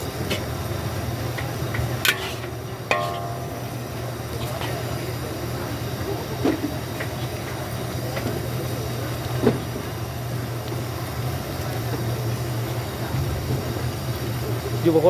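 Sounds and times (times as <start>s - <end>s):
metal clinks and clanks: 2.1s - 3.9s.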